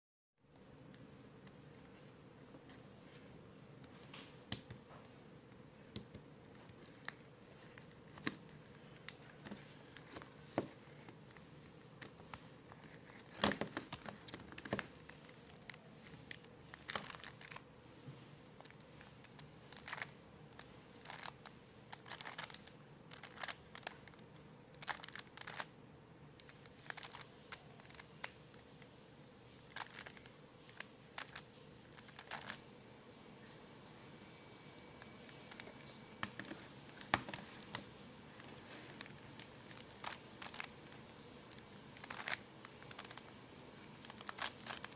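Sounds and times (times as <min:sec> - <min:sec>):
puzzle cube plastic clicks: 0:21.0 - 0:25.7, 0:26.4 - 0:28.4, 0:29.7 - 0:32.6, 0:38.9 - 0:43.3, 0:44.0 - 0:44.9.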